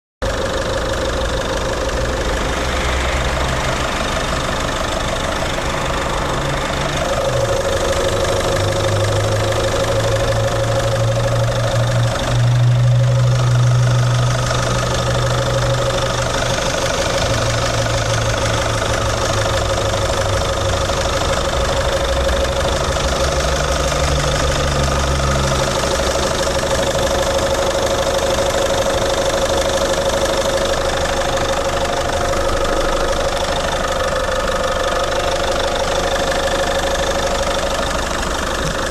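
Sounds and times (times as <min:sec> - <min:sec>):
diesel engine idling: 0:00.2 - 0:38.9.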